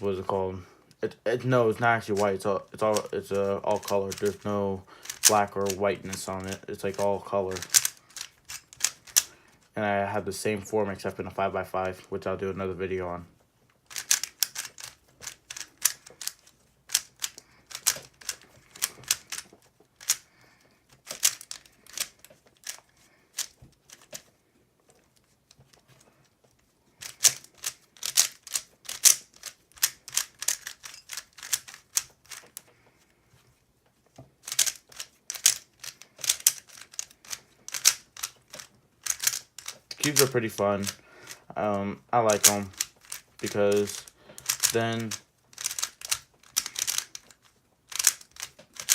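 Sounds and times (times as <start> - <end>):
puzzle cube clicking as turned: 2.1 - 9.3, 13.9 - 20.3, 20.9 - 24.3, 27.0 - 32.7, 34.4 - 41.4, 42.3 - 48.9.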